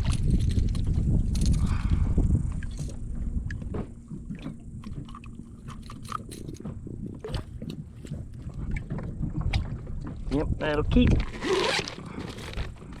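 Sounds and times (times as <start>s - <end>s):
fishing gear clicks and taps: 0.0s - 10.4s
wind rumble on microphone: 0.0s - 13.0s.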